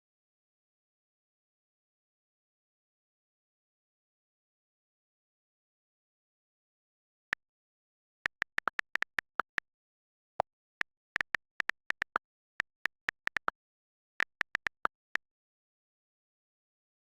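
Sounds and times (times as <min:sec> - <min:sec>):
short sharp clicks: 0:08.3 - 0:09.7, 0:14.2 - 0:15.0.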